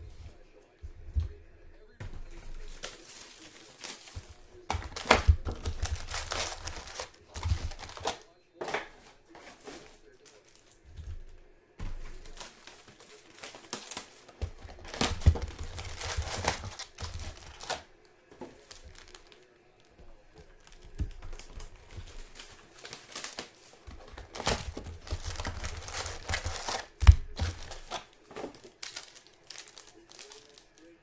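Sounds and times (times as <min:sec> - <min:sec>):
card pack wrappers crinkling: 0:00.0 - 0:31.0
cards being handled: 0:00.0 - 0:31.0.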